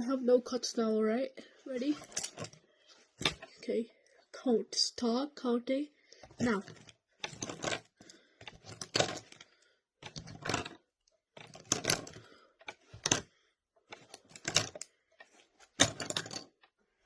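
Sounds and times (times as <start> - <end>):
plastic pens clattering: 1.8 - 2.6, 6.2 - 10.8, 11.4 - 13.3, 13.9 - 16.5.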